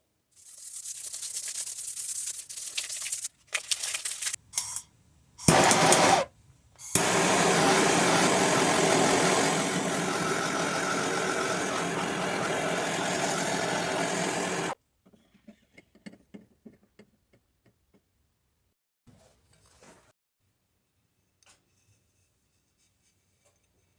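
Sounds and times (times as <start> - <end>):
power tool grinding hiss: 5.4 - 14.8.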